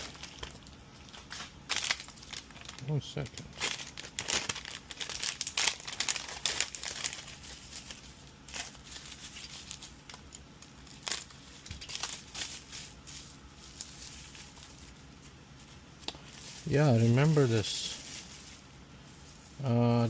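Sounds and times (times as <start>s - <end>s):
plastic packaging crinkling: 0.0s - 19.7s.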